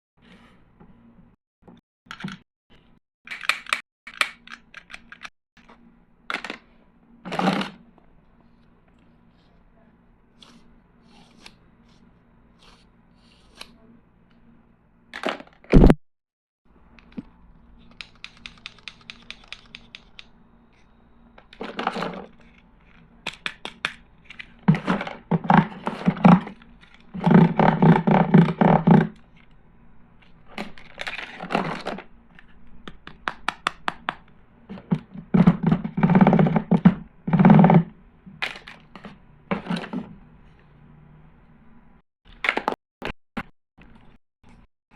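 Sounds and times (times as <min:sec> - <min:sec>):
plastic toy clicks and knocks: 0:03.3 - 0:05.3.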